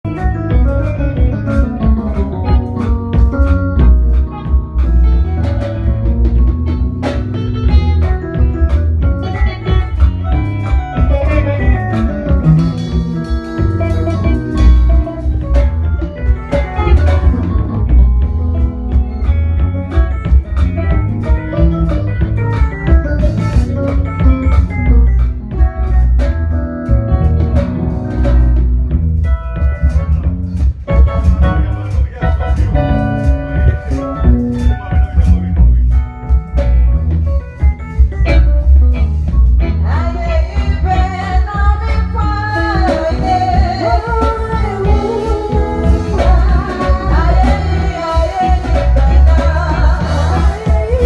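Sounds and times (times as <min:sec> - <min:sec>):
drum kit strokes: 0:00.0 - 0:51.0
guitar: 0:00.0 - 0:51.0
heavy bass line: 0:00.0 - 0:51.0
person singing: 0:39.9 - 0:51.0.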